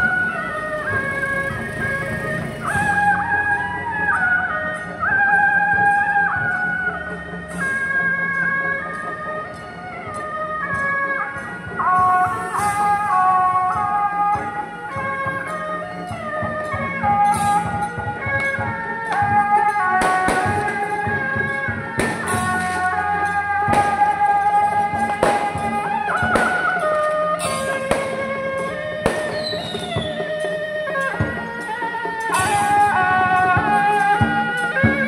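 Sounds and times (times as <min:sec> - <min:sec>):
melody of held notes: 0:00.0 - 0:35.0
sharp percussion strikes: 0:07.4 - 0:35.0.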